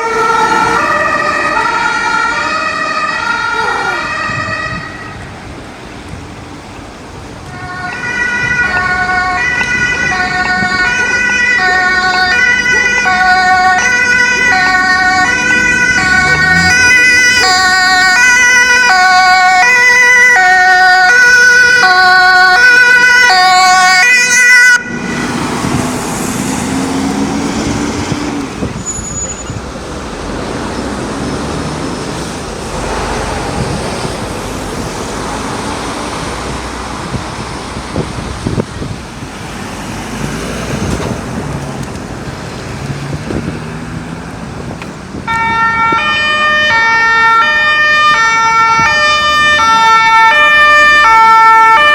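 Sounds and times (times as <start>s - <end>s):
two-tone siren: 0.0s - 5.5s, 7.4s - 29.6s, 45.2s - 51.9s
road traffic: 0.0s - 51.9s.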